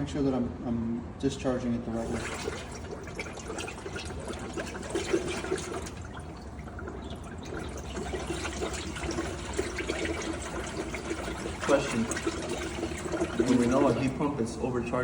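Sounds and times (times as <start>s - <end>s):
gas bubbling into water: 1.9s - 14.2s.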